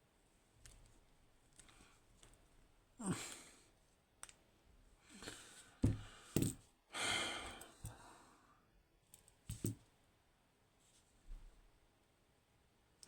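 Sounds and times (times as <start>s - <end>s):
breathy sigh: 3.0s - 3.6s, 5.1s - 8.6s.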